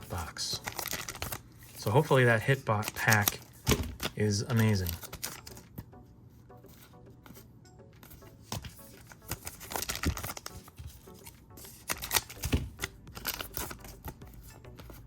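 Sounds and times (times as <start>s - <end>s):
cards being handled: 0.0s - 6.0s, 6.6s - 15.0s
wrapper crinkling and tearing: 0.1s - 5.7s, 8.8s - 14.2s.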